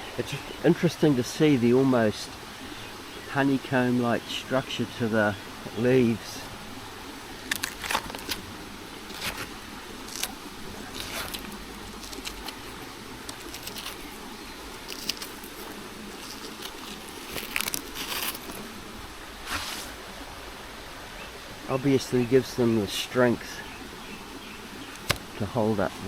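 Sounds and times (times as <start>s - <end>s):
leaves crackling and scraping: 5.5s - 26.0s.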